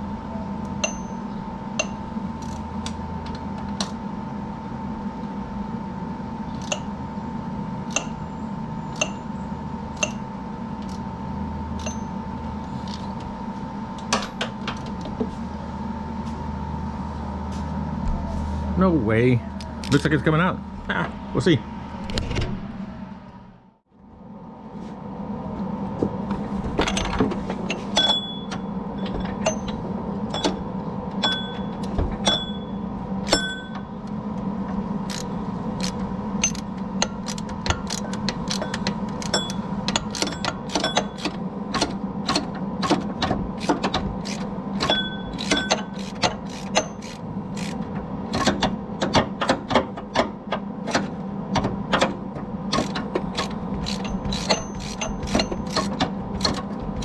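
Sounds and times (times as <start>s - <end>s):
steady low hum: 0.0s - 57.0s
ratchet wrench clicking: 1.8s - 2.7s, 35.1s - 42.5s, 43.6s - 47.8s, 52.7s - 56.6s.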